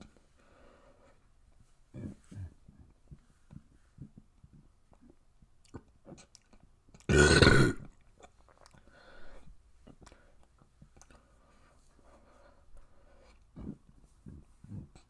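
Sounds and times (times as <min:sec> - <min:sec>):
person burping: 0:07.1 - 0:07.9.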